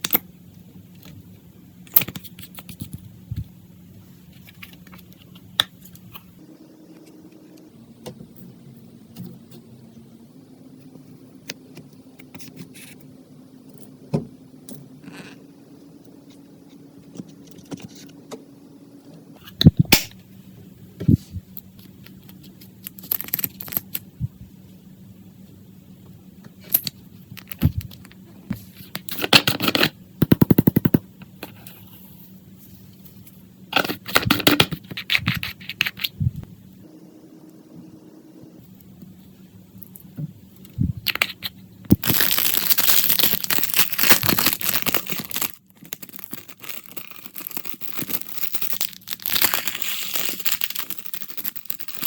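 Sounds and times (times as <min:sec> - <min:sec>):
faint steady hum: 0:00.0 - 0:52.0.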